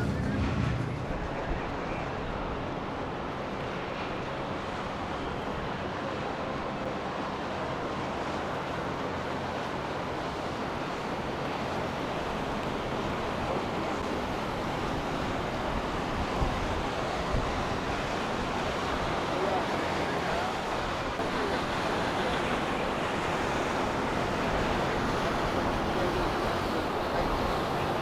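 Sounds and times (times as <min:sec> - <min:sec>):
low thumps: 0:00.0 - 0:01.8
wind rumbling on microphone: 0:00.0 - 0:03.6
wind and water wash: 0:00.0 - 0:28.0.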